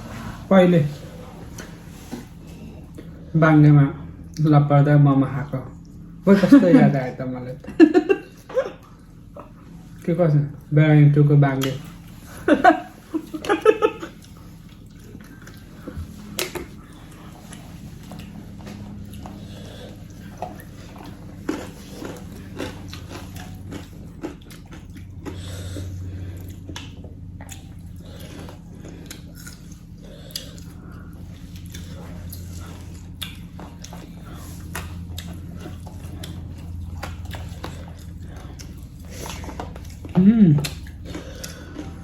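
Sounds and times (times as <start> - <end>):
people chewing: 0.0 - 3.3, 5.4 - 10.8, 11.4 - 42.0
low steady hum: 0.0 - 42.0
eating clicks and smacks: 14.2 - 19.4, 20.1 - 30.8, 31.4 - 42.0.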